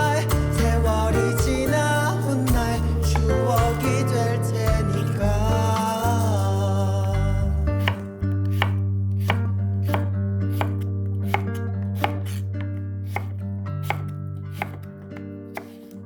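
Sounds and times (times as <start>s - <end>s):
soft background music: 0.0s - 16.0s
knife chopping on cutting board: 7.8s - 14.9s, 15.5s - 16.0s.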